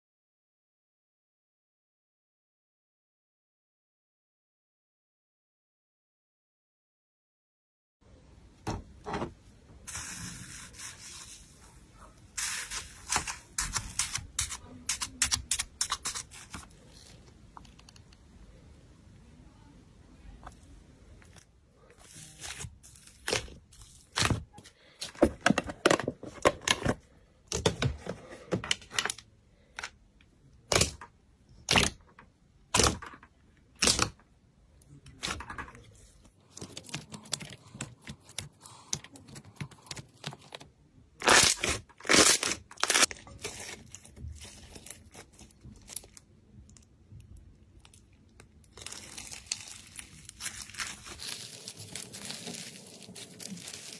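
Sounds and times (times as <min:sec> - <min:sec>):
slime popping and crackling: 0:31.6 - 0:32.0, 0:33.8 - 0:34.2, 0:41.2 - 0:46.2, 0:47.8 - 0:53.9.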